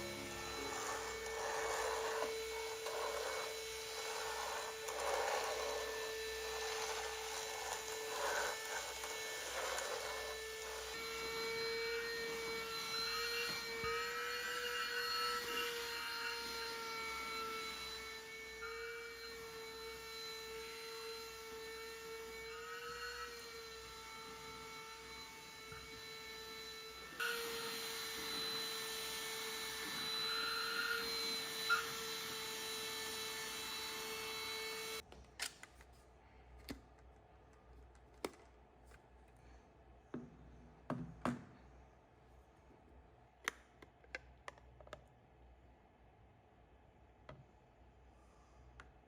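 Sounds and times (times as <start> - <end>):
electric motor whining: 0.0 - 35.0.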